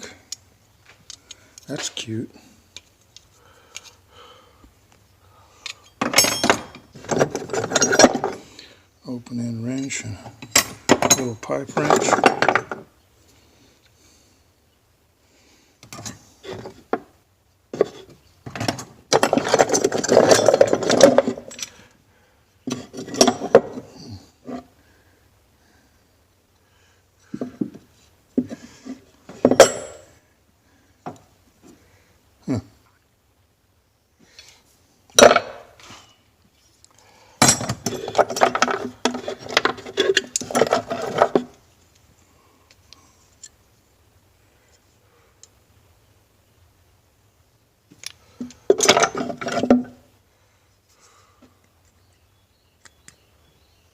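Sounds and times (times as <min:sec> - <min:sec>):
metal hand tools clattering: 0:06.0 - 0:08.4, 0:18.6 - 0:21.8, 0:48.7 - 0:49.8.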